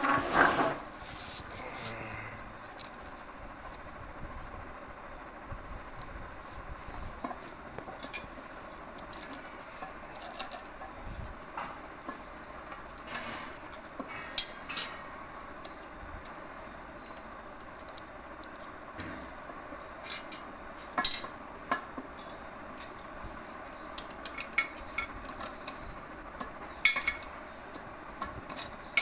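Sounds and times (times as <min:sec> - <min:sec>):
metal tools clinking: 0:10.1 - 0:10.9, 0:14.1 - 0:15.1, 0:20.0 - 0:23.1.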